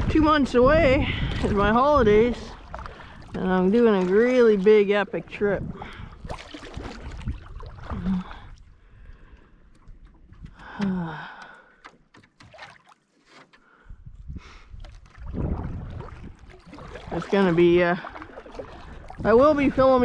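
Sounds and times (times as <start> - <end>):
low rumbling: 0.0 - 11.4, 13.9 - 20.0
paddle strokes in water: 0.0 - 20.0
clicks and knocks on hull: 9.7 - 13.7.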